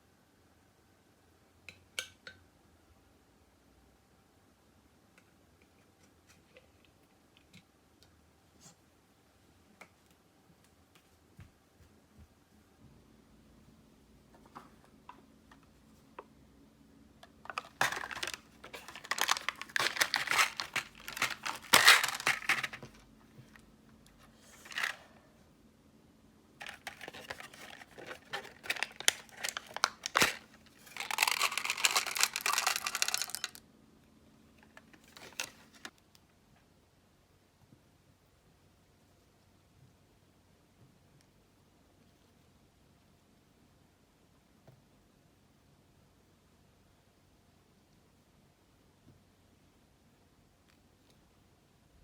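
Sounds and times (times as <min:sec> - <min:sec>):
packaging crinkling and tearing: 0:17.5 - 0:23.0, 0:24.6 - 0:25.0, 0:26.6 - 0:33.6, 0:35.0 - 0:35.9.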